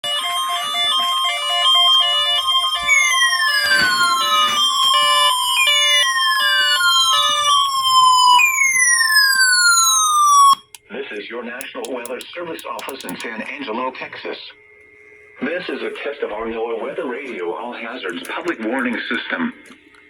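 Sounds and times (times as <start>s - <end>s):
electronic beeping alert tones: 0.0s - 9.7s
falling siren whoops: 0.0s - 10.7s.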